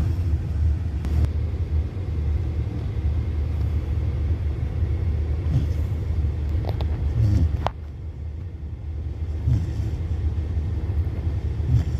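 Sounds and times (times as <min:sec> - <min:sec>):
car cabin rumble: 0:00.0 - 0:11.9
puppy snoring softly: 0:05.4 - 0:06.1, 0:07.0 - 0:07.7, 0:09.3 - 0:10.2, 0:11.6 - 0:11.9.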